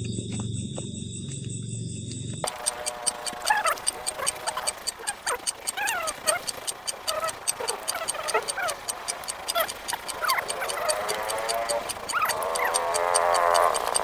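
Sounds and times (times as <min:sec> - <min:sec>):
rapid high ticking: 0:02.4 - 0:14.0
sliding animal chirps: 0:02.4 - 0:14.0
rising pitched call: 0:02.5 - 0:14.0.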